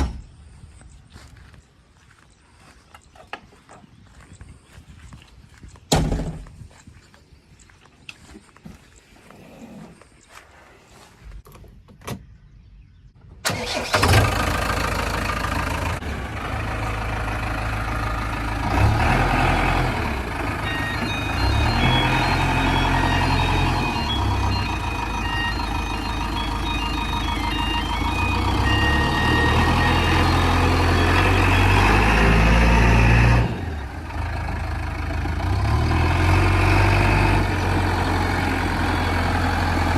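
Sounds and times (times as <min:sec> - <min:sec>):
diesel engine running: 0:13.4 - 0:39.9
melody of high beeping tones: 0:19.9 - 0:32.7.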